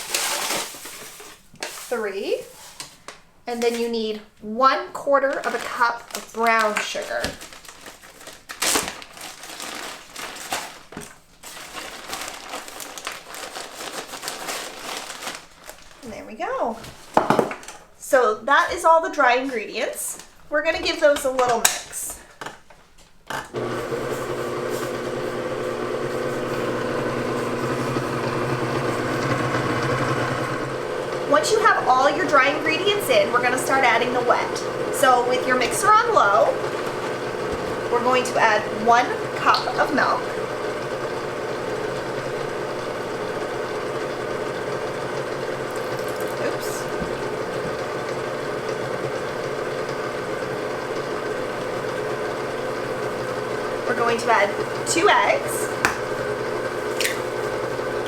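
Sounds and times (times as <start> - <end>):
person talking: 1.9 - 2.5, 3.5 - 7.4, 16.0 - 16.8, 18.0 - 22.3, 31.2 - 36.8, 37.7 - 40.4, 46.2 - 47.4, 53.8 - 55.8
electric mixer running: 23.5 - 58.0.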